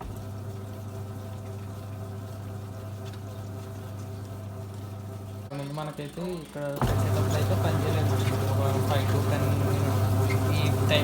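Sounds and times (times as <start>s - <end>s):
water churning in tub: 0.0s - 4.2s, 6.8s - 11.0s
washing machine motor humming: 0.0s - 11.0s.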